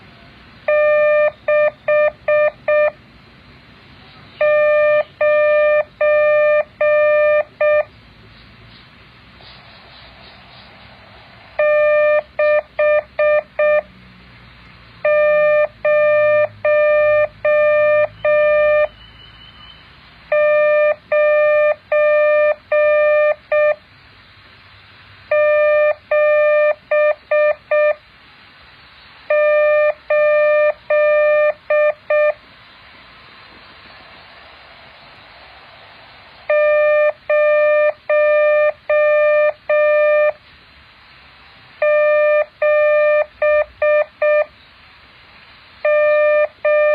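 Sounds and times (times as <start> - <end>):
morse code beeps: 0.7 - 3.0, 4.4 - 7.9, 11.6 - 13.9, 15.0 - 18.9, 20.3 - 23.8, 25.3 - 28.0, 29.3 - 32.4, 36.5 - 40.4, 41.8 - 44.5, 45.8 - 46.9.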